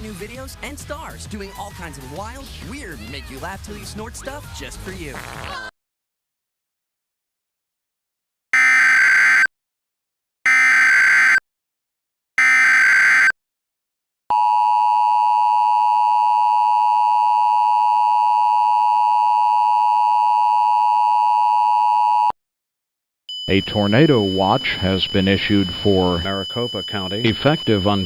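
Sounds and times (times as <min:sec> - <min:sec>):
steady two-tone attention signal: 0:23.3 - 0:28.0
digital data bursts: 0:23.4 - 0:28.0.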